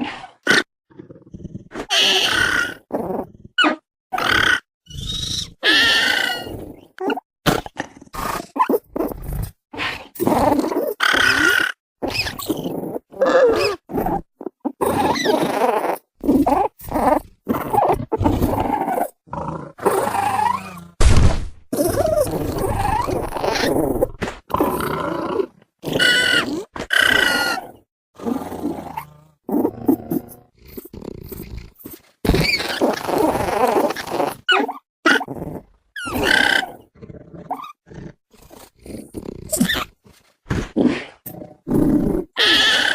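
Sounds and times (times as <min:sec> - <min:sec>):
creature high-pitched calls: 0:01.9 - 0:02.8, 0:03.6 - 0:07.2, 0:25.9 - 0:27.7, 0:42.4 - 0:42.9
creature grunts growls and roars: 0:21.8 - 0:31.7.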